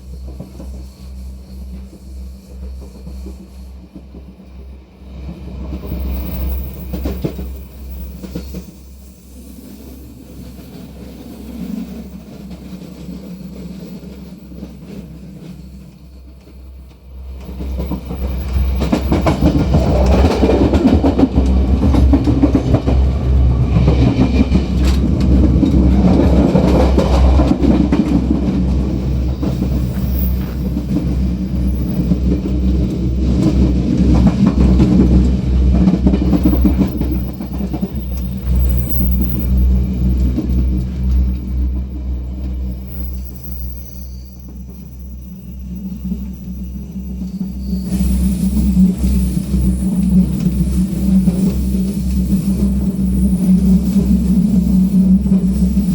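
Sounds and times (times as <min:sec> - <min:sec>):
low diesel drone: 0:16.7 - 0:55.9.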